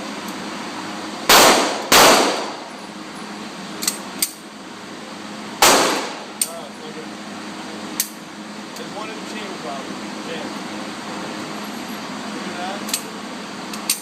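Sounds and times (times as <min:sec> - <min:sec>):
gunshots with ringing tail: 0:01.3 - 0:02.7, 0:05.6 - 0:06.3.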